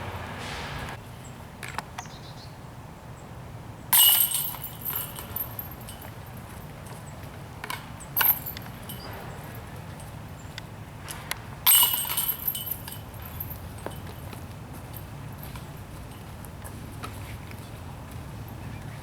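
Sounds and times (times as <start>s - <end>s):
discs striking metal chains: 4.0s - 6.7s, 8.1s - 10.2s, 11.6s - 16.3s.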